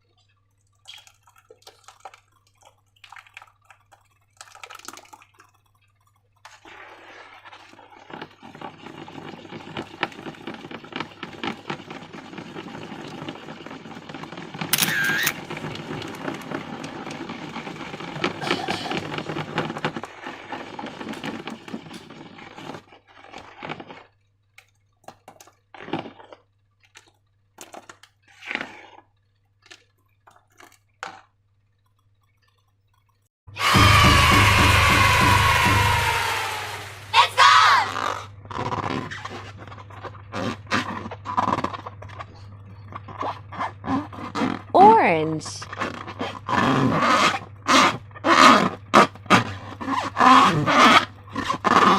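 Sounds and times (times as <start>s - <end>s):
slime squishing and crackling: 0.1s - 33.2s.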